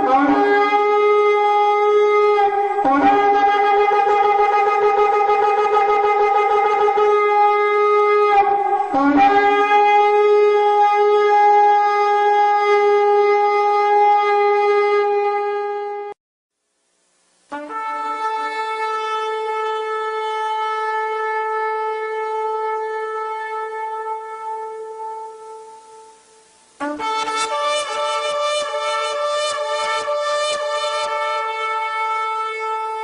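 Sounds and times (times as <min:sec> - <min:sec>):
ram's horn blasts: 0:17.5 - 0:33.0.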